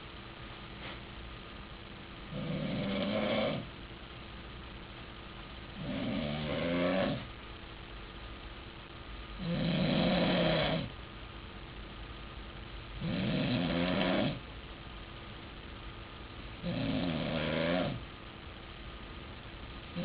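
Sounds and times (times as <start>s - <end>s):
man snoring loudly: 2.3s - 3.7s, 5.8s - 7.3s, 9.4s - 10.9s, 13.0s - 14.4s, 16.6s - 18.0s.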